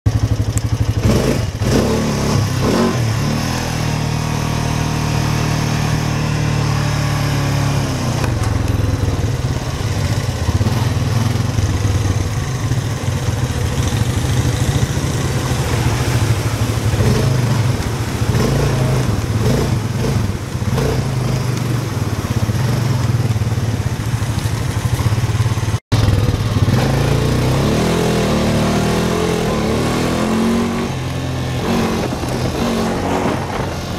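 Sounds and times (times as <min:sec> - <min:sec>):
atv engine running: 0:00.1 - 0:33.9.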